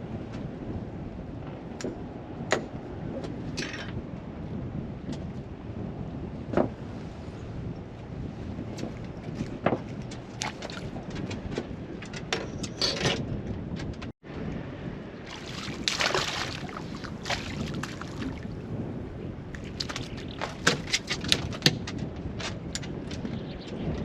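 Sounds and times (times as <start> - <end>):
water slapping against boat hull: 8.5 - 12.0, 15.3 - 18.7, 19.5 - 23.2.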